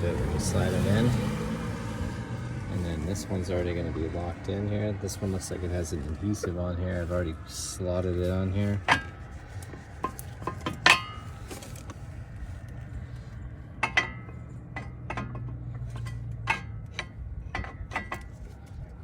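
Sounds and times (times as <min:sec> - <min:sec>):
metal brake pads clinking: 0:08.2 - 0:18.9.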